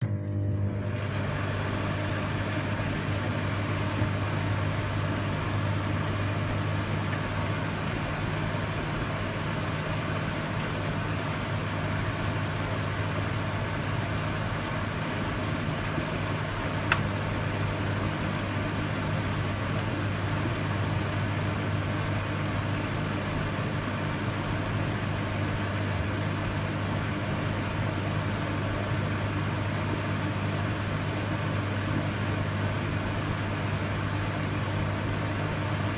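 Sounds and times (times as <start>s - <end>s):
microwave oven humming: 0.0s - 35.9s
sharp click: 16.9s - 17.1s.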